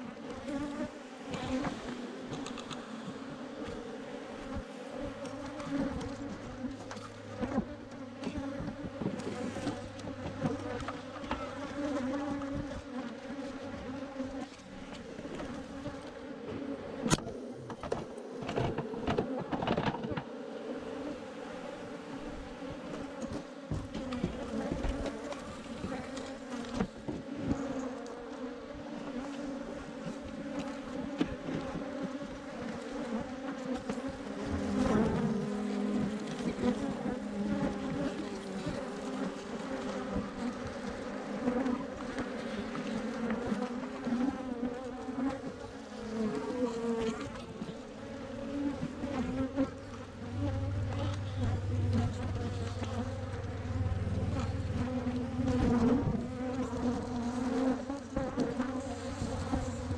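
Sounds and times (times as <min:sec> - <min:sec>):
bees buzzing: 0:00.0 - 0:59.9.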